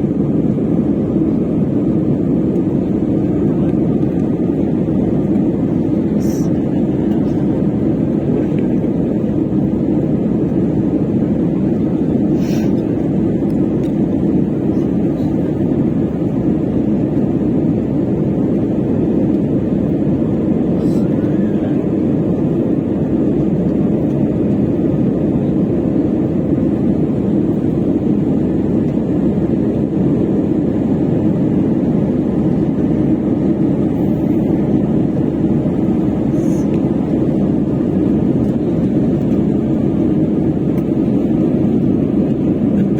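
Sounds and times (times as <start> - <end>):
airliner cabin rumble: 0.0 - 42.9.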